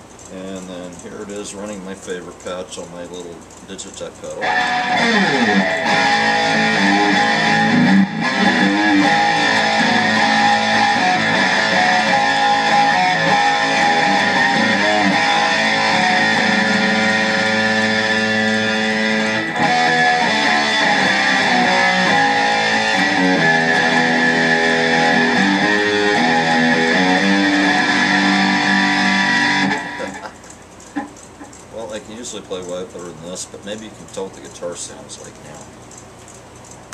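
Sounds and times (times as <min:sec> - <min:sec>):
electric guitar notes and chords: 0:04.3 - 0:32.0.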